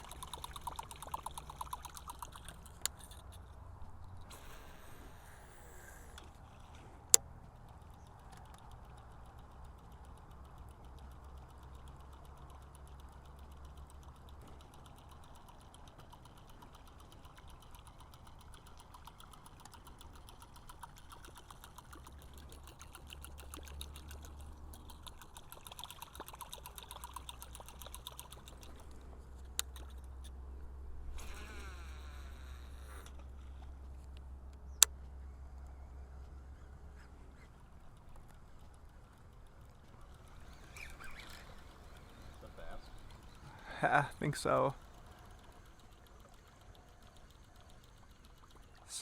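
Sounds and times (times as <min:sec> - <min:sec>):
water trickling: 0:00.0 - 0:04.3, 0:08.0 - 0:30.3
fishing reel ticking: 0:00.0 - 0:33.9, 0:37.3 - 0:49.0.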